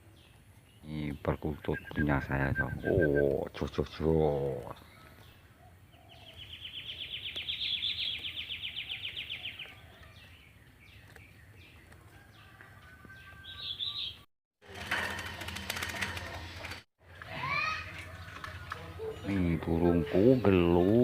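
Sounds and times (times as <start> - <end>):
faint bird chirps: 0.2 - 3.8
songbird trilling: 1.5 - 3.5.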